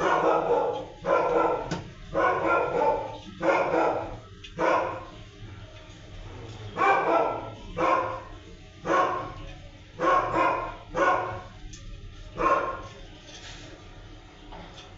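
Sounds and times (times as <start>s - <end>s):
dog barking: 0.0s - 5.1s, 6.8s - 9.4s, 10.0s - 11.6s, 12.4s - 12.9s.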